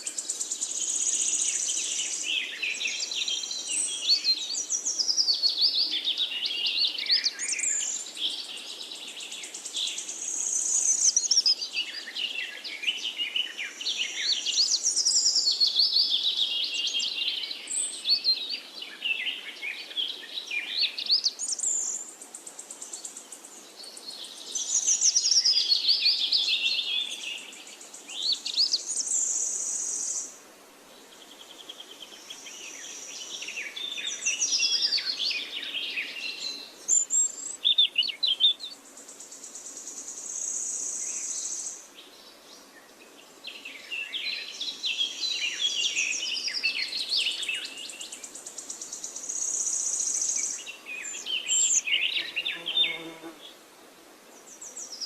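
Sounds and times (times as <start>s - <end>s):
songbirds warbling: 31.0s - 53.6s.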